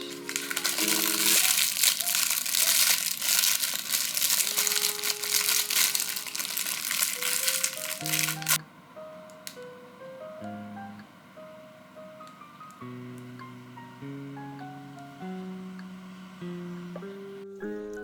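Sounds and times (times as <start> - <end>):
packaging crinkling: 0.0 - 8.6
light background music: 0.0 - 18.0.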